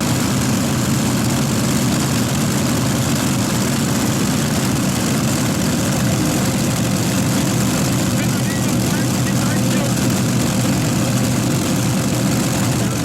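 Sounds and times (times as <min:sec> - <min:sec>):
tractor engines rumbling: 0:00.0 - 0:13.0.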